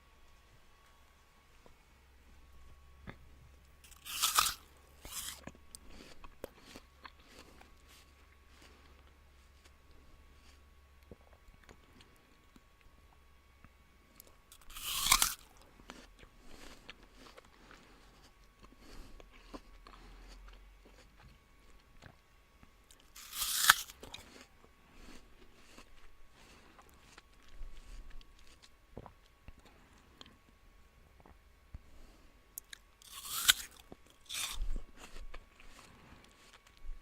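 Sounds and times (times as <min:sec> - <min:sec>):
crunchy chewing: 0:03.0 - 0:13.2, 0:14.1 - 0:30.4, 0:32.6 - 0:36.8
apple bite crunch: 0:03.9 - 0:09.8, 0:14.2 - 0:22.2, 0:22.9 - 0:30.4, 0:32.6 - 0:36.8.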